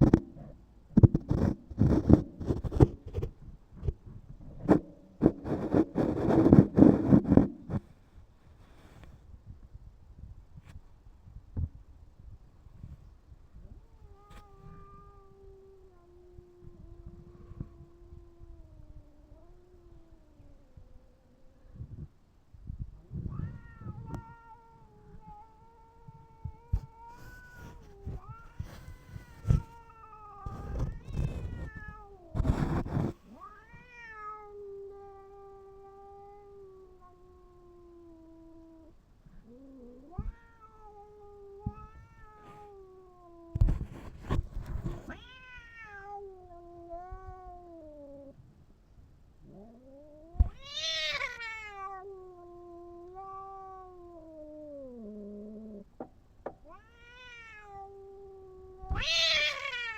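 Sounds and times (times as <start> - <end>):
cat meowing: 23.3 - 32.5, 33.3 - 38.9, 45.0 - 48.3, 49.5 - 55.9, 56.6 - 59.9.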